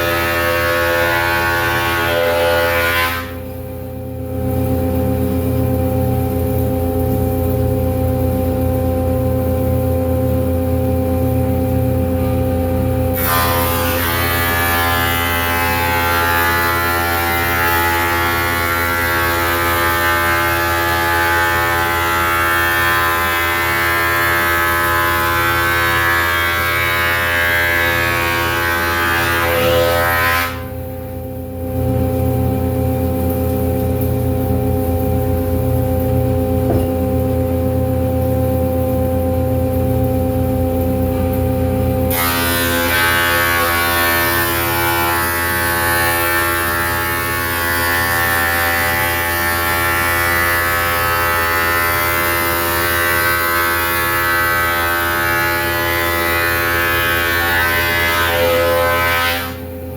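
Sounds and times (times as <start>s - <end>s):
planer cutting wood hiss: 0.0s - 3.5s, 13.1s - 30.8s, 42.1s - 59.7s.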